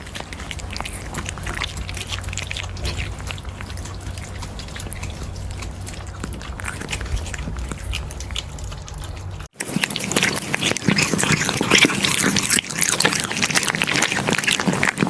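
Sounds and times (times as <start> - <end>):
low hum: 0.0 - 9.5
kittens chewing wetly: 0.0 - 15.0.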